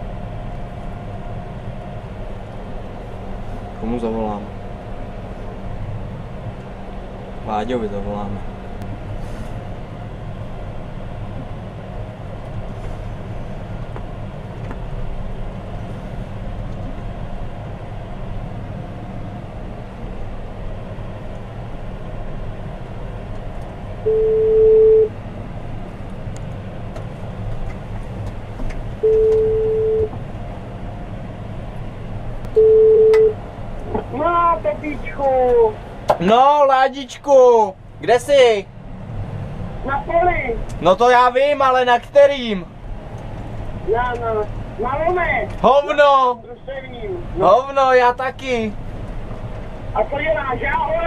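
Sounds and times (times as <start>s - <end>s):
tractor diesel engine running: 0.0s - 51.0s
phone ringback beeps: 24.1s - 25.1s, 29.0s - 30.1s, 32.6s - 33.4s.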